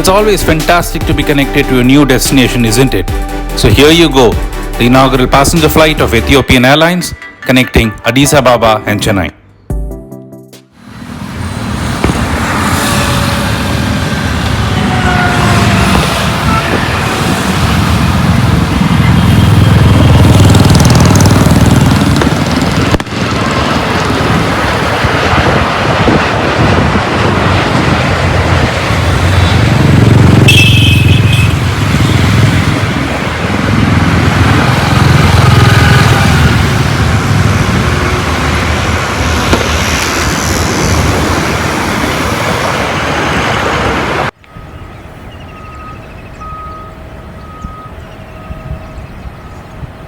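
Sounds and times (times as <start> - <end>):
jet engine roar: 10.8 - 49.1
faint beep: 44.5 - 49.6.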